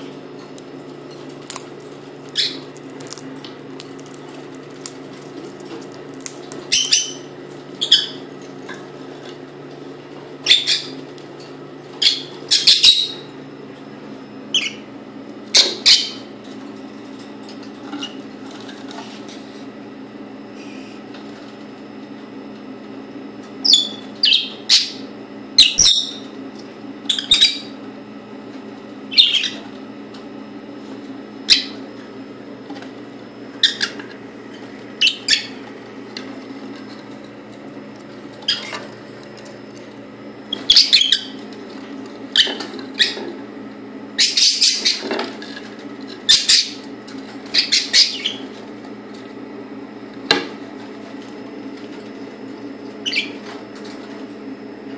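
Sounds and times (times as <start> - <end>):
parrot chirping and squawking: 2.3 - 3.3, 6.6 - 8.3, 10.4 - 11.0, 12.0 - 13.3, 14.5 - 14.9, 15.5 - 16.3, 23.6 - 26.2, 27.1 - 27.8, 29.1 - 29.7, 31.4 - 31.9, 33.5 - 35.6, 38.4 - 38.9, 40.5 - 41.5, 42.2 - 43.4, 44.2 - 48.6, 53.0 - 53.5.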